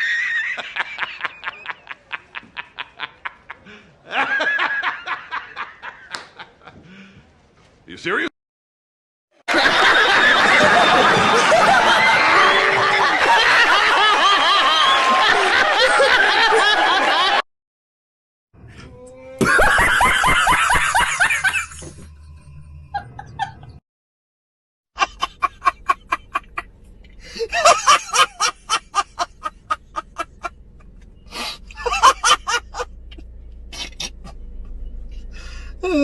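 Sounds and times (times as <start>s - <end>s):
several voices laughing: 0.0s - 6.8s, 9.5s - 17.4s, 19.4s - 22.0s, 22.9s - 23.8s, 25.0s - 31.0s, 31.6s - 34.9s
rapid staccato laugh: 31.7s - 34.4s.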